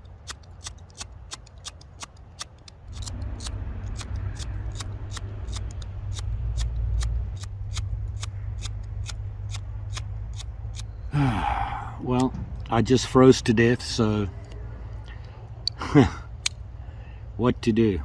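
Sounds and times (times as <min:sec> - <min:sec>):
sharp clicks: 0:00.0 - 0:11.0
wind buffeting microphone: 0:11.8 - 0:14.0.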